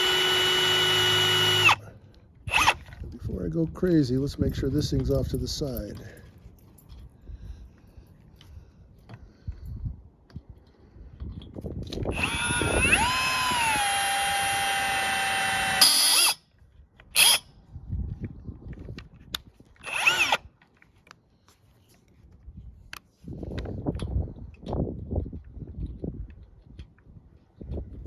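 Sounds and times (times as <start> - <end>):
cordless drill whining: 0.0 - 1.8, 2.5 - 3.1, 11.9 - 16.4, 17.2 - 17.4, 19.8 - 20.5.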